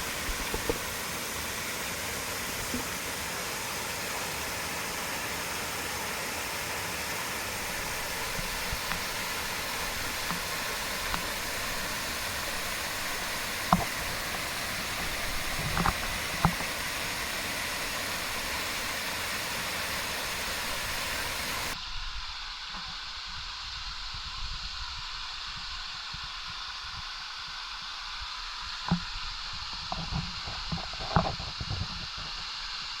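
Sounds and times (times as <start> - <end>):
waterfall rushing: 0.0 - 21.8.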